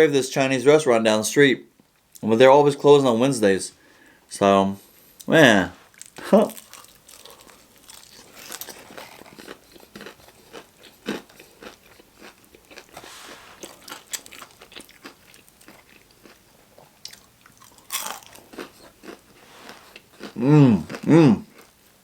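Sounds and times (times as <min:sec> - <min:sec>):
crunchy chewing of fried chicken: 0:05.9 - 0:22.0.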